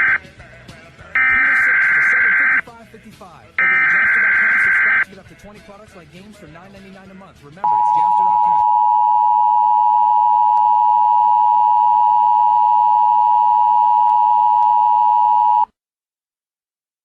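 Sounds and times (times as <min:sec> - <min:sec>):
two-tone alert beep: 0:01.2 - 0:02.6, 0:07.7 - 0:15.6.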